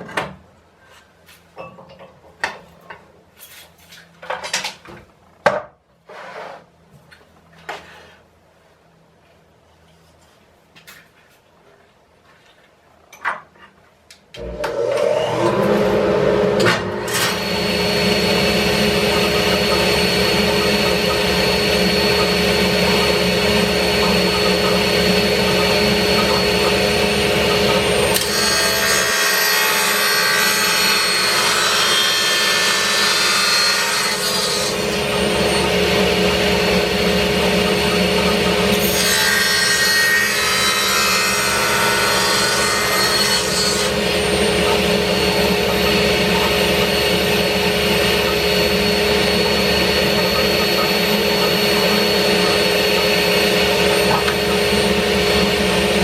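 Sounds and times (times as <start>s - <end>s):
table saw cutting wood: 14.4s - 56.0s
table saw running: 14.4s - 56.0s.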